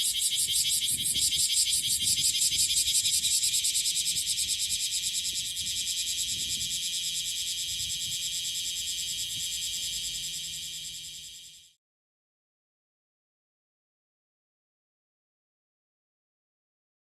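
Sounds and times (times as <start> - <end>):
cicada buzzing: 0.0 - 11.8.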